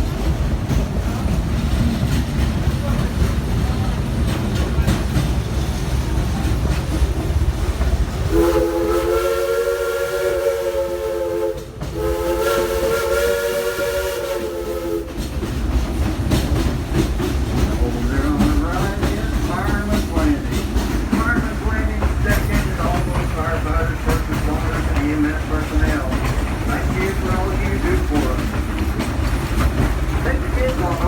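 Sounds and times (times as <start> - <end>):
train rumble and clatter: 0.0 - 31.0
steam locomotive whistle: 8.3 - 15.2.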